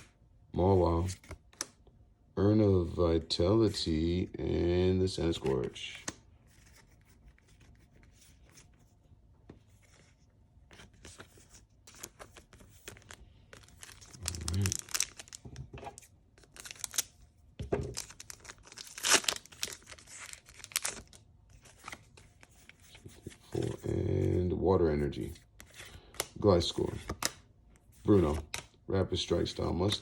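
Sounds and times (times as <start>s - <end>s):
foil wrapper tearing and crinkling: 13.0s - 15.4s, 16.4s - 17.1s, 17.9s - 21.2s.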